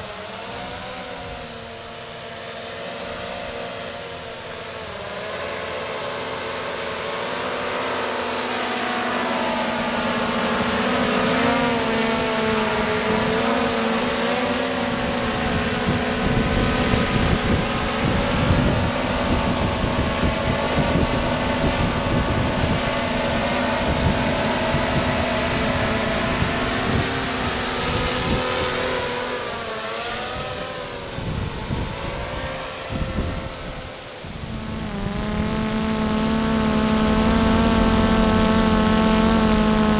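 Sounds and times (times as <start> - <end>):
drone motors whining: 0.0 - 39.9
wind buffeting microphone: 14.9 - 28.9, 30.3 - 39.9.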